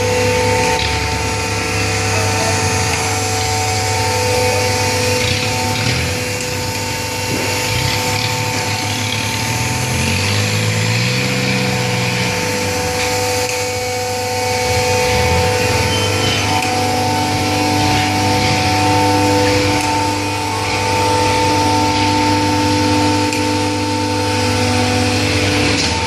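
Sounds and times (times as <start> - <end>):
hydraulic motor and pump whining: 0.0 - 26.0.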